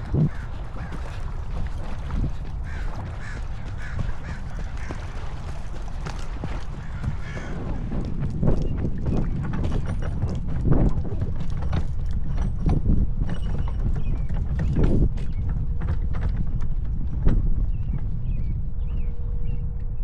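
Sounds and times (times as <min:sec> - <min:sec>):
running footsteps on a trail: 0:00.0 - 0:18.5
wind rumble on microphone: 0:00.0 - 0:20.0.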